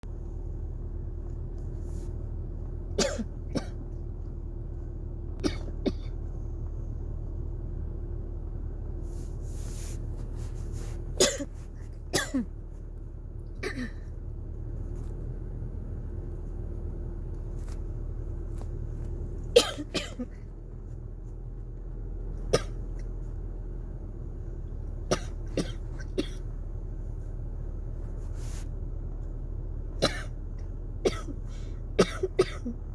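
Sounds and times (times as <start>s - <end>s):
steady low hum: 0.0s - 32.9s
person coughing: 3.0s - 3.8s, 5.4s - 6.2s, 11.2s - 12.5s, 13.6s - 14.1s, 19.6s - 20.4s, 25.1s - 26.4s, 30.0s - 30.4s, 31.1s - 31.4s, 32.0s - 32.8s.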